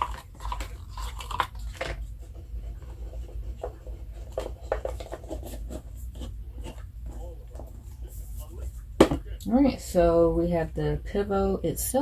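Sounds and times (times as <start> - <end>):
paper rustling and scraping: 1.6 - 8.8.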